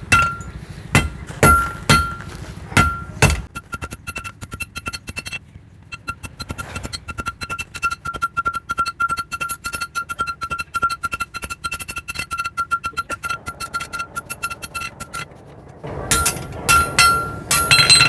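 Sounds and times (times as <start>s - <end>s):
hammer striking steel on anvil: 0.0s - 3.6s, 16.1s - 18.0s.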